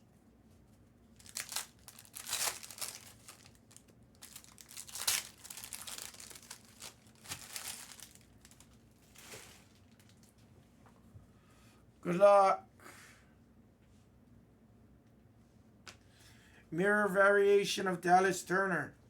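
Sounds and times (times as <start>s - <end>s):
card pack wrappers tearing: 1.2s - 8.7s.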